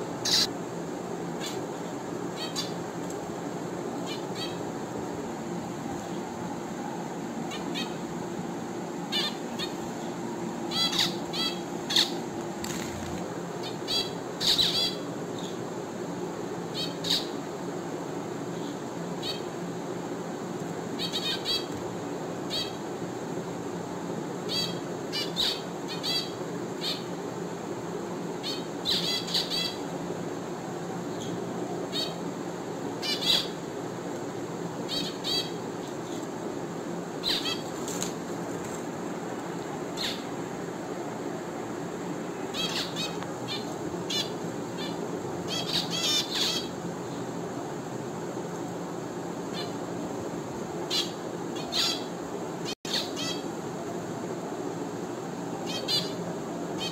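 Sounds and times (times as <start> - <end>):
low background hum: 0.0 - 56.9
finches giving nasal calls: 0.2 - 0.5, 2.4 - 2.8, 7.5 - 8.0, 9.1 - 10.0, 10.6 - 15.5, 21.0 - 21.8, 24.5 - 27.1, 28.4 - 29.8, 33.0 - 33.6, 34.9 - 36.2, 37.2 - 37.7, 40.0 - 40.3, 42.5 - 46.8, 50.9 - 52.1, 52.9 - 53.4, 55.6 - 56.2.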